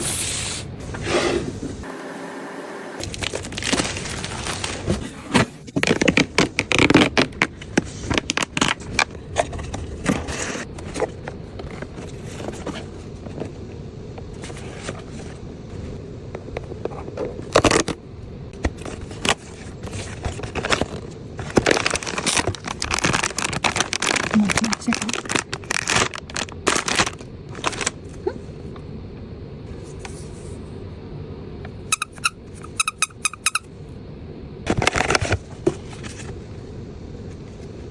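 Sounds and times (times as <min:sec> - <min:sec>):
packaging crinkling and scraping: 0:03.0 - 0:13.6, 0:17.1 - 0:18.0, 0:18.6 - 0:28.2, 0:34.7 - 0:36.4.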